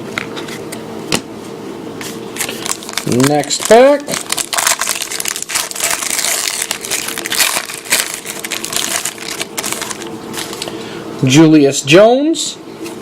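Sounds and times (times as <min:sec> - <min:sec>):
foil wrapper crinkling: 0:02.4 - 0:10.8.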